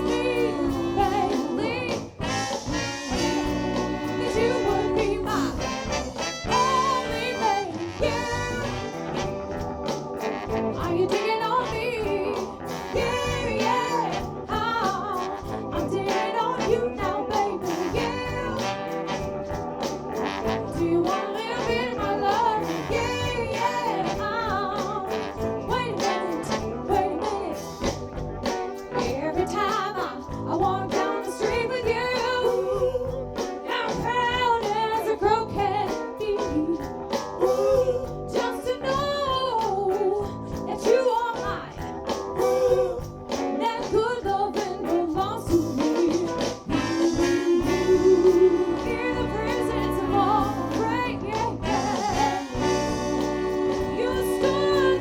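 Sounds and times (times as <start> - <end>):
wavering lead vocals: 0.0 - 9.4, 45.5 - 55.0
live band playing: 0.0 - 55.0.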